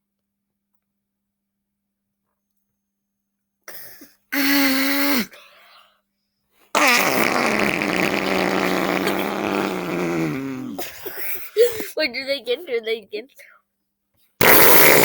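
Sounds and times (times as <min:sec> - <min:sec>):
boy making fart sounds: 0:03.7 - 0:05.3, 0:06.8 - 0:12.0, 0:14.4 - 0:15.0.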